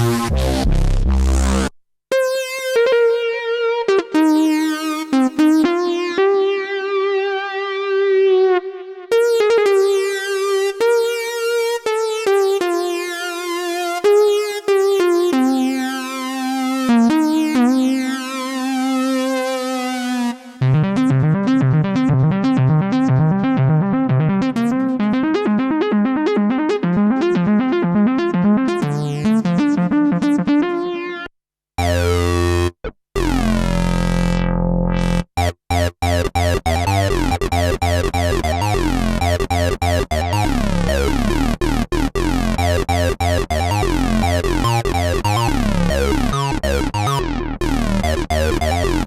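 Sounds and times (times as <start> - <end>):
low synth bass notes: 0.0 - 1.7, 20.6 - 24.7, 31.8 - 49.0
arpeggiated synthesizer pattern: 20.4 - 49.0
synthesizer lead with vibrato: 31.8 - 49.0.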